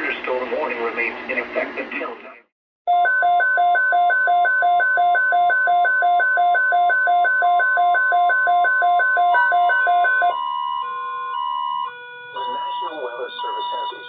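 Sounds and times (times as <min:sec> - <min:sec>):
steady warning tone: 0:02.9 - 0:14.0
two-pitch alarm beep: 0:02.9 - 0:14.0
other radio alert tones: 0:12.3 - 0:14.0.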